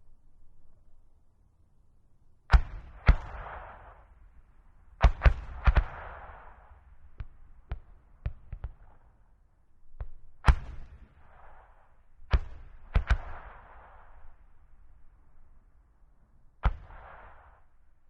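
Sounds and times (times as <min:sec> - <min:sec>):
mortar firing reports: 0:02.5 - 0:09.2, 0:10.4 - 0:14.6, 0:16.6 - 0:17.7
rolling echo: 0:02.5 - 0:18.0.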